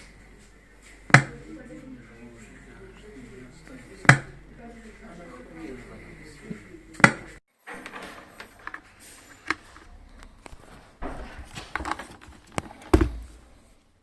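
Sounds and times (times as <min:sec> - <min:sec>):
speaker knocking and clicking: 0:01.1 - 0:01.4, 0:04.0 - 0:04.4, 0:07.0 - 0:07.3.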